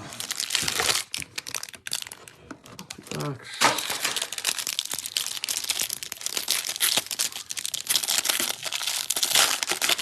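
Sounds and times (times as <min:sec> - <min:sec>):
packaging being ripped open: 0:02.8 - 0:10.0.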